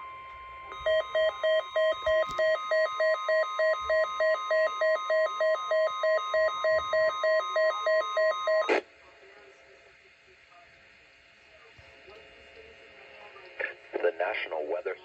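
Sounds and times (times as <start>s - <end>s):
steady warning alarm tone: 0.0s - 8.7s.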